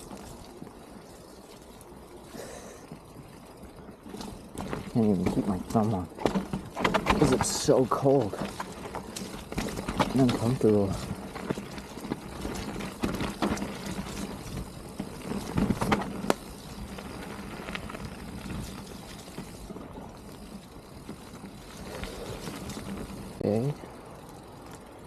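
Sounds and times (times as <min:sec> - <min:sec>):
bike tyres splashing through mud: 0:04.0 - 0:23.7
bike clattering and knocking: 0:04.1 - 0:21.6.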